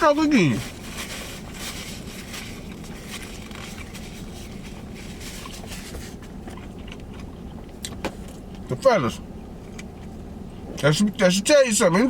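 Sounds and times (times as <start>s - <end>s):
low background hum: 0.0s - 12.0s
faint chewing with crackly clicks: 6.2s - 8.7s.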